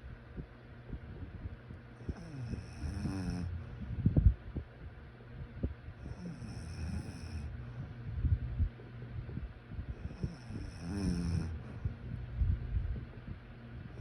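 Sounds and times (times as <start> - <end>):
person snoring: 2.0 - 3.6, 6.0 - 7.6, 10.0 - 11.8.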